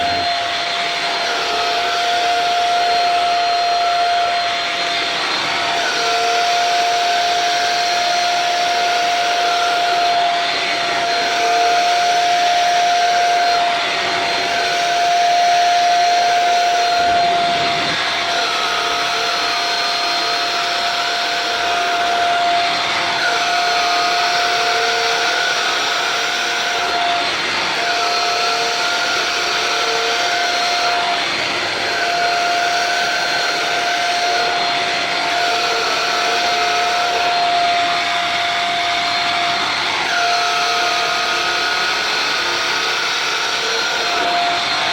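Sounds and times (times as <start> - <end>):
vacuum cleaner running: 0.0 - 44.9.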